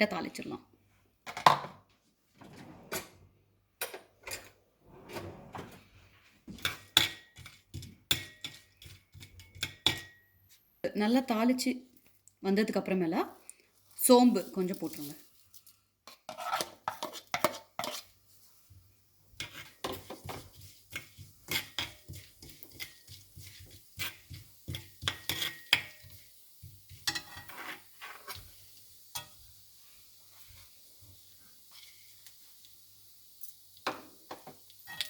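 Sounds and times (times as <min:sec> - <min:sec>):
metal spoon scraping a pan: 0:06.6 - 0:10.2, 0:16.0 - 0:18.2, 0:19.4 - 0:29.5.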